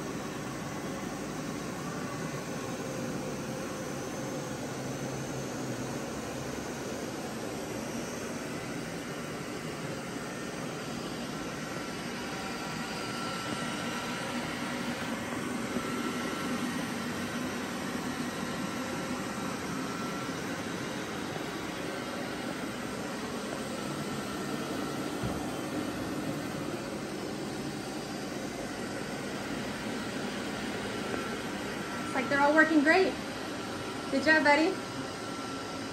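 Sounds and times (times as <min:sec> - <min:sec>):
robot vacuum cleaners whirring: 0:00.0 - 0:35.9.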